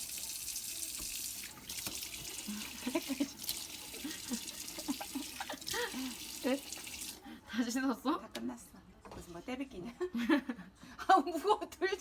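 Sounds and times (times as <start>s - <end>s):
water splashing into a sink: 0.0s - 7.2s
water running from a tap: 0.0s - 7.3s.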